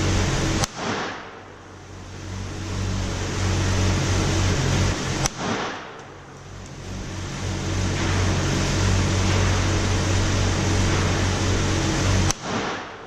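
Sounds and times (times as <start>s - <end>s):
low hum with rushing noise: 0.0s - 13.0s
gunshot: 0.6s - 1.4s, 5.2s - 6.0s, 12.3s - 13.0s.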